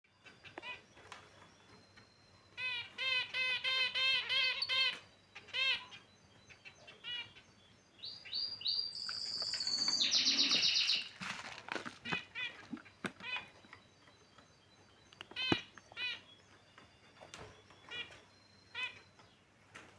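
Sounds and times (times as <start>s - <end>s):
finches chirping: 0.1s - 19.6s.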